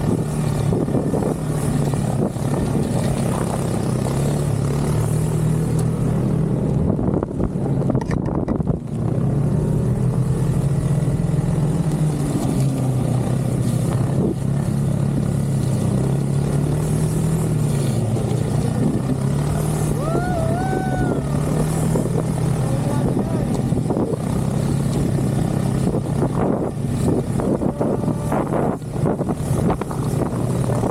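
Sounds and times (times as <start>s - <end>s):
snowmobile engine running: 0.0s - 30.9s
rising and falling tone: 19.4s - 22.4s.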